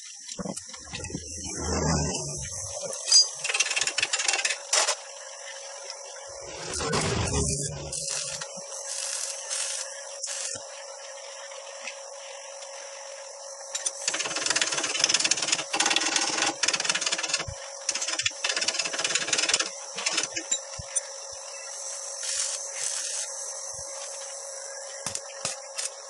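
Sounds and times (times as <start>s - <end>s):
harsh crackling tool noise: 0.3s - 10.8s, 13.8s - 20.9s, 21.9s - 24.1s, 25.0s - 26.0s
steady hiss: 6.2s - 10.7s, 21.5s - 26.0s.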